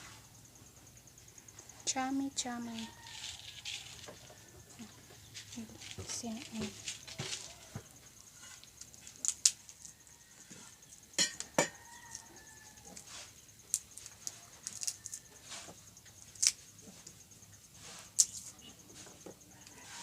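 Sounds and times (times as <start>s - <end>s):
dishes and utensils clinking: 11.2s - 11.8s.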